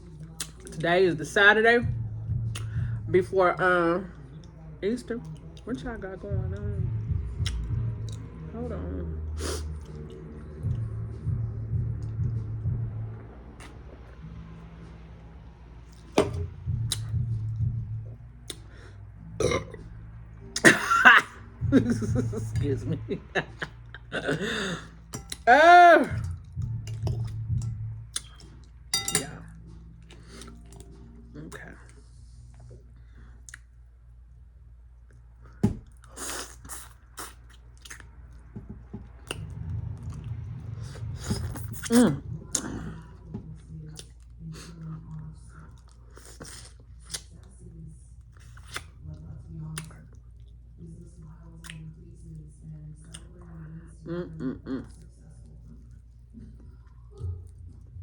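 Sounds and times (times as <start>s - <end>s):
low steady hum: 0.0s - 58.0s
chewing and lip smacking: 0.2s - 0.8s, 2.5s - 2.8s, 7.4s - 8.3s, 16.8s - 17.2s, 26.2s - 28.7s, 30.0s - 31.0s, 33.4s - 33.8s, 35.0s - 38.5s, 41.0s - 47.6s, 48.3s - 50.7s, 51.4s - 52.0s, 53.0s - 53.6s
mouth smacks of eating: 2.5s - 2.8s, 35.9s - 38.2s, 45.8s - 47.3s, 48.4s - 48.9s, 51.6s - 51.8s
loud burp: 19.4s - 19.8s.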